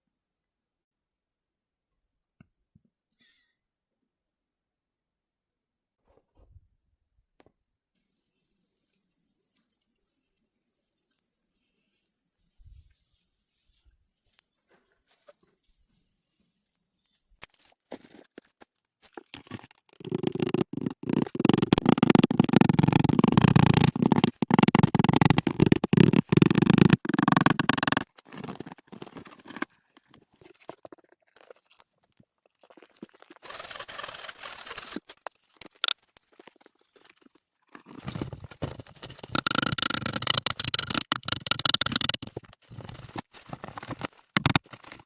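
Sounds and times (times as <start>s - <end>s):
rustling and crackling handling noise: 8.4s - 32.1s, 32.7s - 45.0s.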